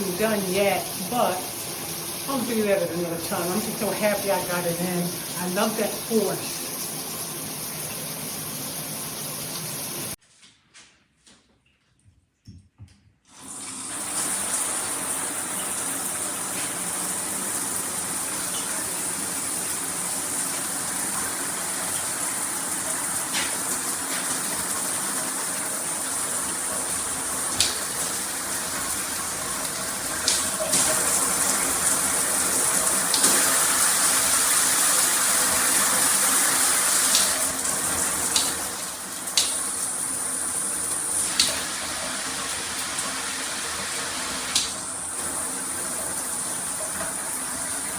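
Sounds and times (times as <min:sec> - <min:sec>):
shower head spraying water: 0:00.0 - 0:10.2, 0:13.4 - 0:47.2.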